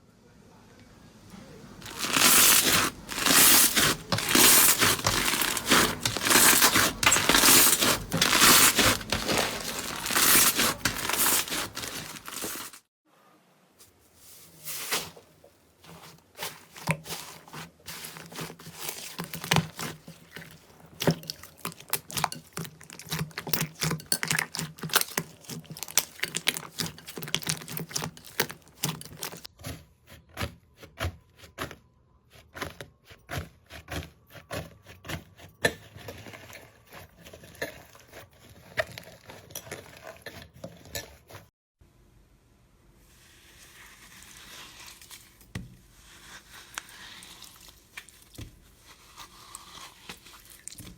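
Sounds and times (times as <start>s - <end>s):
slime squished by hand: 1.8s - 12.8s, 15.9s - 29.5s.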